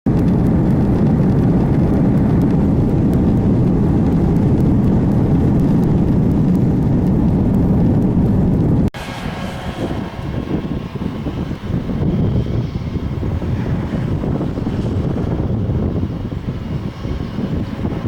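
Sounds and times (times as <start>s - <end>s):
jet airliner rumble: 0.1s - 18.0s.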